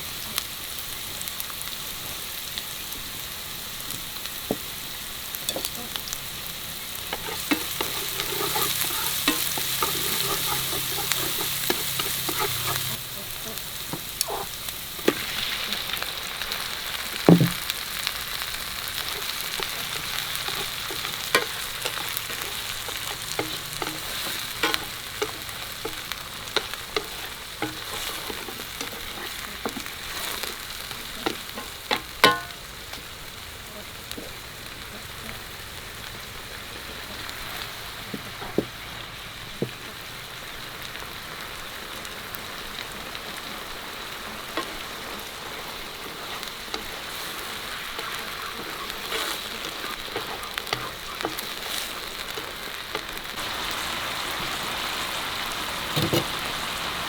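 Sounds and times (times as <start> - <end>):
food sizzling in a pan: 0.0 - 57.0
utensil tapping a pan: 7.1 - 13.0, 17.2 - 17.7, 19.0 - 32.6.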